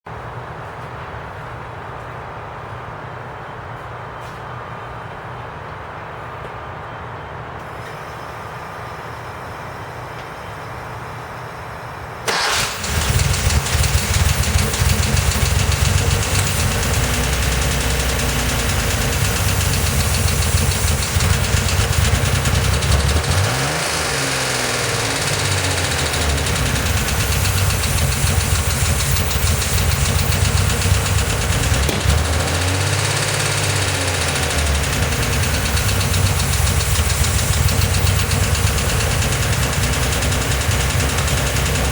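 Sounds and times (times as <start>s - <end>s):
car engine starting and idling: 7.6s - 41.9s
engine tapping: 12.3s - 41.9s.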